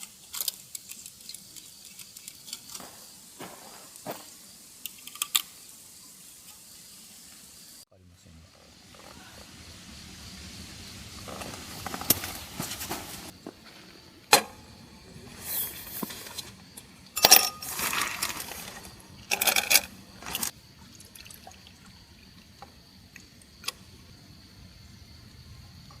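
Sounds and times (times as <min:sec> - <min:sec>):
glass and tableware clinking: 0:17.2 - 0:17.7
liquid pouring: 0:20.2 - 0:23.5.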